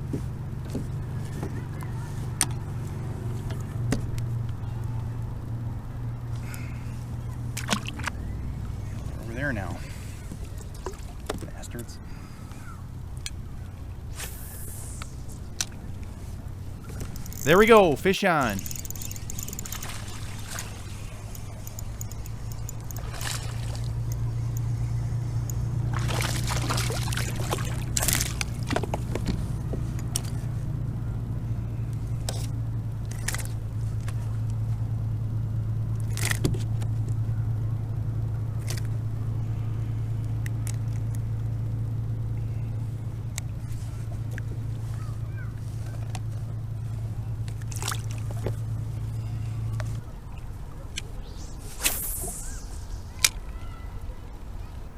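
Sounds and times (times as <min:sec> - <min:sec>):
low engine-like hum: 0:00.0 - 0:54.9
water splashing: 0:25.9 - 0:28.4.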